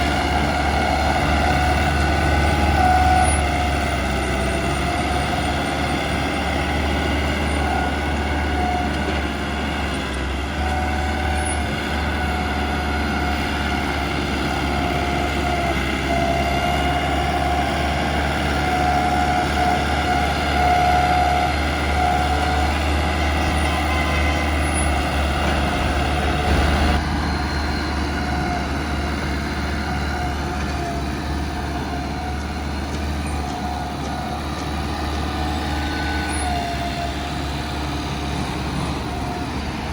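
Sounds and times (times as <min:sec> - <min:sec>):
bulldozer diesel engine: 0:00.0 - 0:39.9.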